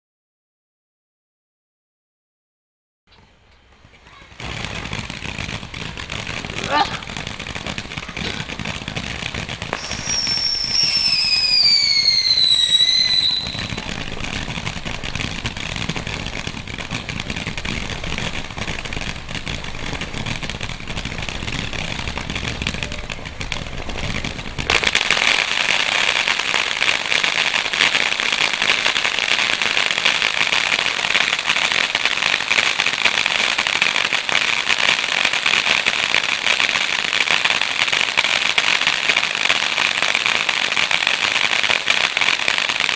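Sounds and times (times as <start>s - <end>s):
fireworks firing rapid shots: 3.7s - 42.9s
falling whistle: 9.8s - 13.6s.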